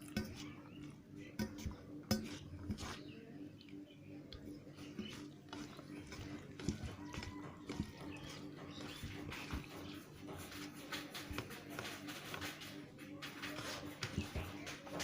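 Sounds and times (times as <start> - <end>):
steady low hum: 0.0 - 15.0
clicks and scrapes on a plate: 1.4 - 3.2.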